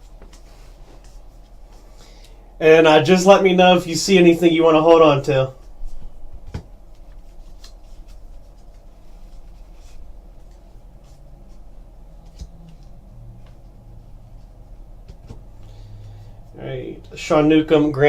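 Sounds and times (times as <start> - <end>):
faint low hum: 0.0 - 18.0
cards rustling and clicking: 5.6 - 13.7.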